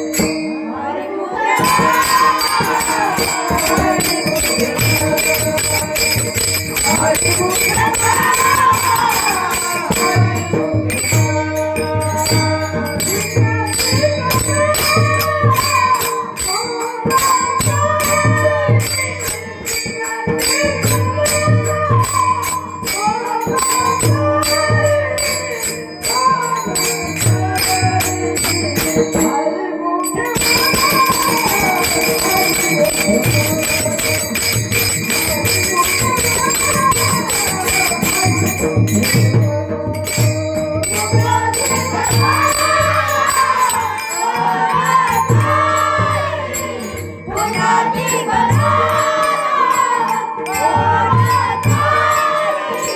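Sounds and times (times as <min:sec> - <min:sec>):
devotional singing: 0:00.0 - 0:52.9
jingling percussion: 0:00.0 - 0:52.9
drum beat: 0:01.6 - 0:16.6, 0:30.4 - 0:49.8.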